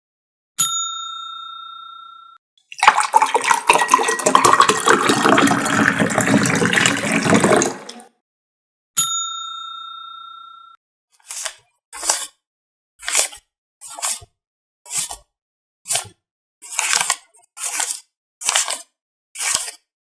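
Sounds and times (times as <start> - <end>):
bell ding: 0.6 - 2.4, 9.0 - 10.8
rushing splashing water: 2.8 - 8.0.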